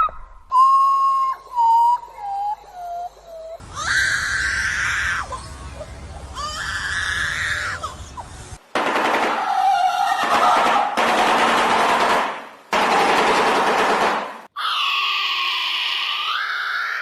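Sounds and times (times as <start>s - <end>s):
bird screaming: 3.6s - 8.4s, 14.5s - 17.0s
harsh rattling bird call: 3.6s - 8.5s.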